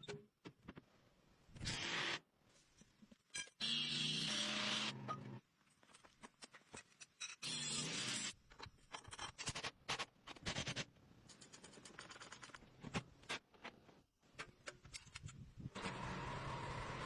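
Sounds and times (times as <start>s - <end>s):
tools clicking and scraping: 5.6s - 15.5s.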